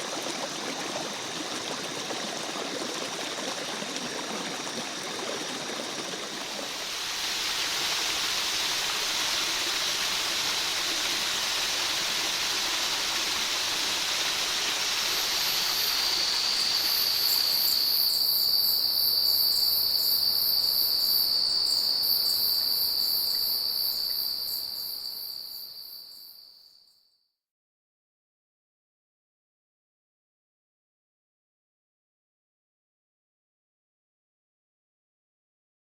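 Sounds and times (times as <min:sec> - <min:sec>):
shrill cicada drone: 0:04.6 - 0:27.0
insects hissing: 0:04.8 - 0:26.9.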